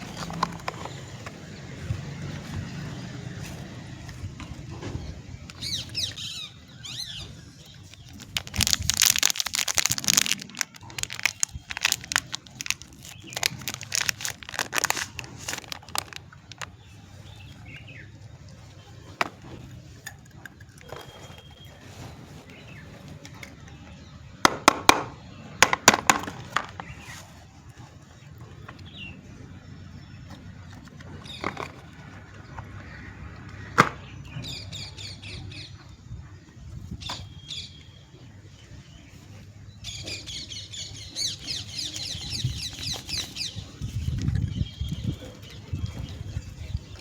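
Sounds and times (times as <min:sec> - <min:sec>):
packaging crinkling and tearing: 0:07.8 - 0:16.8.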